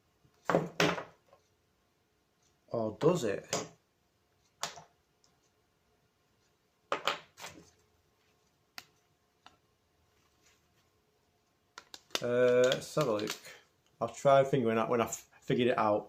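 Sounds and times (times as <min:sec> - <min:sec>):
sharp clicks: 0:11.8 - 0:13.5.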